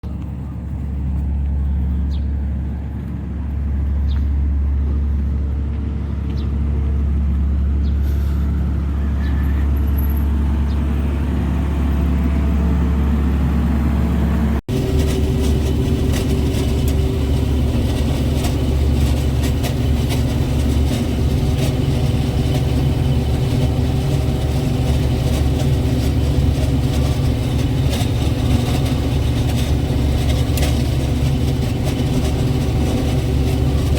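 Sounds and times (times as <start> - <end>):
combine harvester engine drone: 0.0 - 33.9
rattle of machinery: 14.7 - 33.9.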